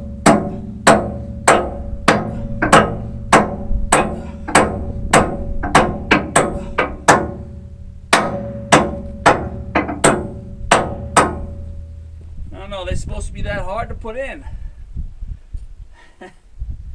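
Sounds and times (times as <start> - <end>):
hammer striking steel: 0.0 - 11.8.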